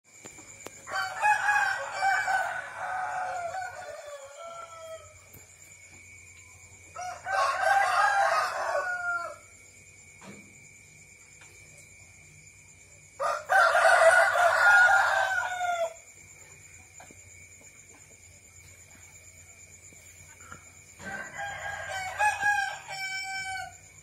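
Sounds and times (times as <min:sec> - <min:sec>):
rooster crowing: 0:00.8 - 0:05.4, 0:06.8 - 0:09.6, 0:13.1 - 0:16.0, 0:20.9 - 0:24.0.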